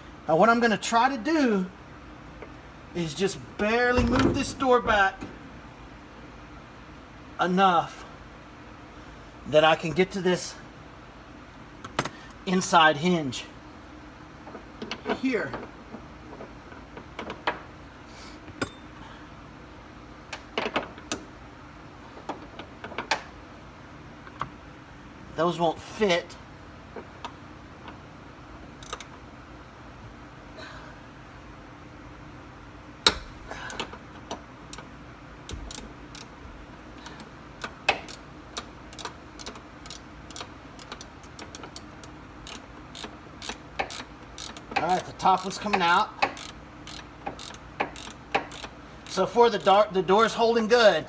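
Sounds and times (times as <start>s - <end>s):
steady low hum: 0.0s - 51.0s
hand tools clicking on metal: 37.0s - 49.2s.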